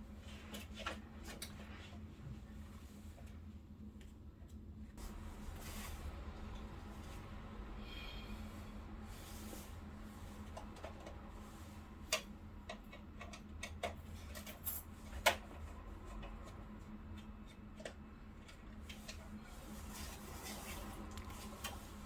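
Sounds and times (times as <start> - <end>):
steady low hum: 0.0 - 22.0
small clicks and taps: 12.1 - 14.5.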